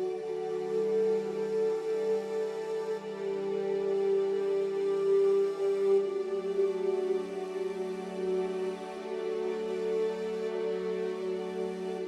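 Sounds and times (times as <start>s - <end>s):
soft new-age keyboard music: 0.0s - 12.0s.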